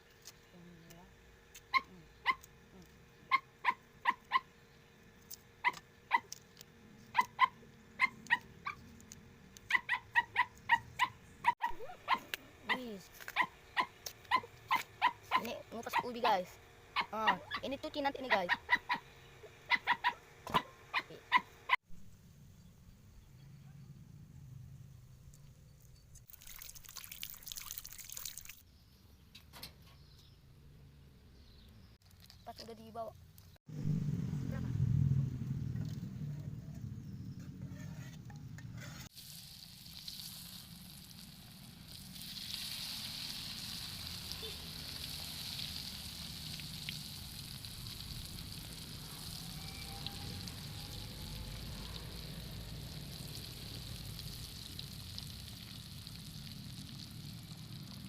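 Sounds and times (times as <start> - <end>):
dog yipping: 1.7 - 2.5, 3.3 - 4.5, 5.6 - 6.3, 7.1 - 8.8, 9.7 - 16.1, 17.0 - 17.6, 18.3 - 19.0, 19.7 - 21.6
water splashing and trickling: 26.2 - 28.6, 39.1 - 58.0.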